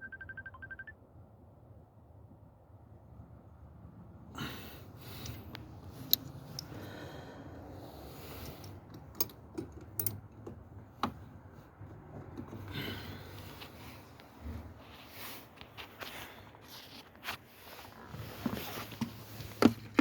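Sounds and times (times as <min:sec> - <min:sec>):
low steady rumble: 0:00.8 - 0:15.7
metallic clicks and clinks: 0:06.0 - 0:06.8, 0:08.3 - 0:10.4.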